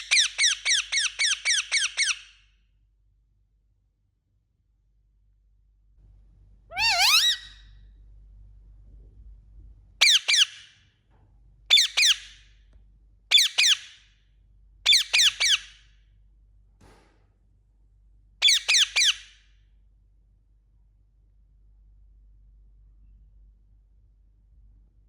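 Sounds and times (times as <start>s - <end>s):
parakeet shrill calls: 0.0s - 2.4s, 6.7s - 7.7s, 10.0s - 10.6s, 11.7s - 12.4s, 13.3s - 14.0s, 14.9s - 15.8s, 18.4s - 19.4s.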